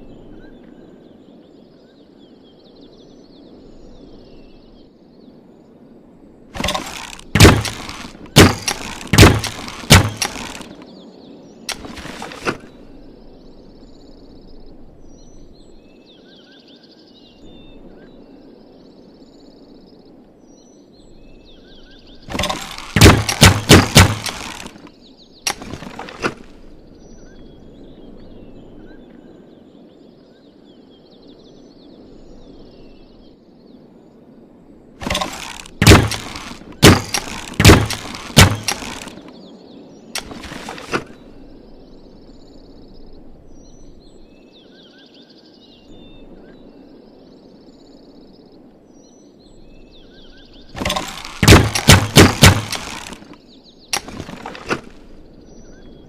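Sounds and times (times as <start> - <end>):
crossbow wooden clacks and snaps: 11.7 - 12.6, 40.2 - 41.1, 54.0 - 55.0.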